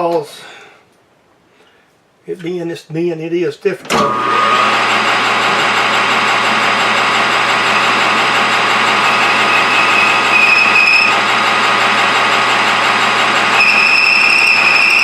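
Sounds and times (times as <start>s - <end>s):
high whine of tool cutting: 3.9s - 15.0s
metal lathe running: 4.0s - 15.0s.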